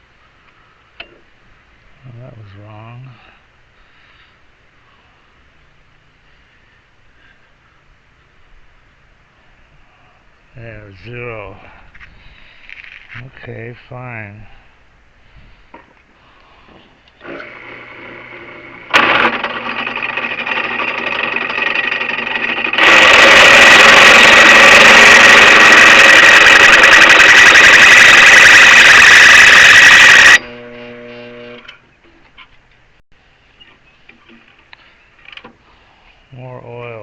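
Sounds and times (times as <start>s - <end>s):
power drill motor running: 17.2s - 31.7s
drill bit screeching into metal: 22.6s - 30.4s.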